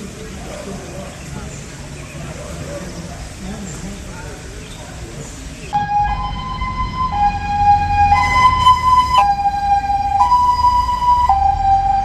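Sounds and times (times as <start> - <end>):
ambulance two-tone siren: 5.8 - 12.0
vehicle engine rumble: 5.8 - 12.0.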